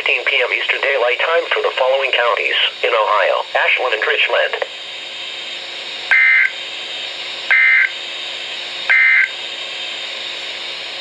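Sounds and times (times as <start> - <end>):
radio hiss: 0.0 - 11.0
buzzy data bursts: 6.1 - 6.6, 7.5 - 7.9, 8.9 - 9.3.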